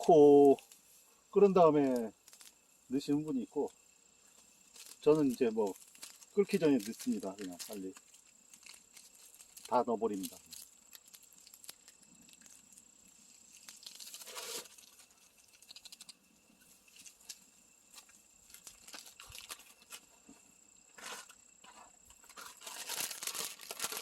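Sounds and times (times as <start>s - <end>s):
packet crinkling and tearing: 1.8s - 2.6s, 4.7s - 12.8s, 13.5s - 16.2s, 18.5s - 20.0s, 22.3s - 24.0s.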